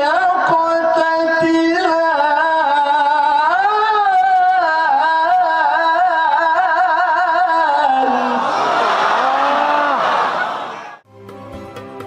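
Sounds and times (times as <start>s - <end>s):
man reciting melodically: 0.0s - 8.6s.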